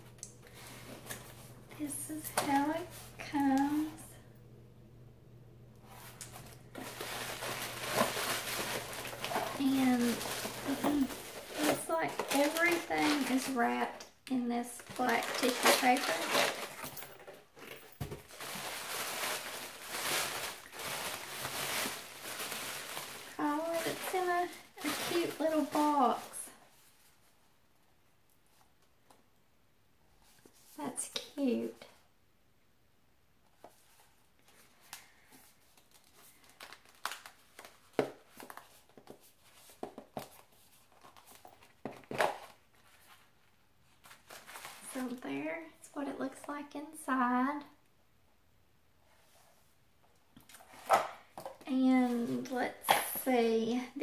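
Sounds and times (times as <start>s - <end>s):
tissue paper rustling: 5.8s - 13.9s, 14.6s - 27.4s, 33.7s - 45.2s.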